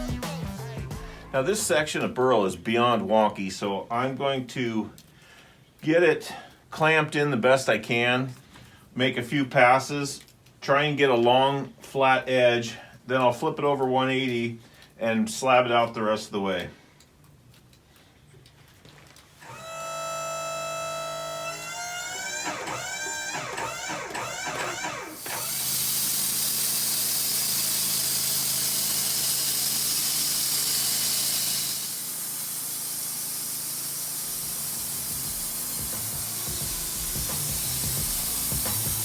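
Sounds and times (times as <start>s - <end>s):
string music: 0.0s - 1.4s
sawmill humming: 19.4s - 39.0s
saw blade hissing through wood: 24.8s - 39.0s.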